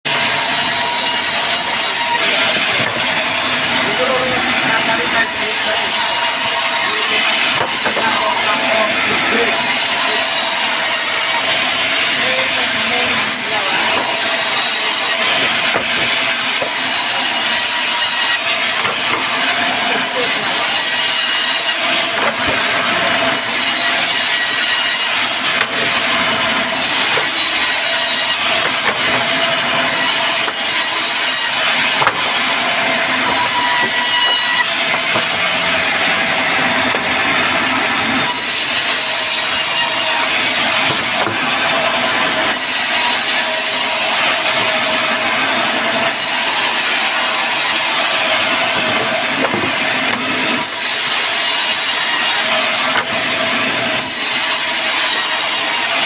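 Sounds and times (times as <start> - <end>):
woodworking tool rasping wood: 11.4 - 45.2, 46.0 - 56.0.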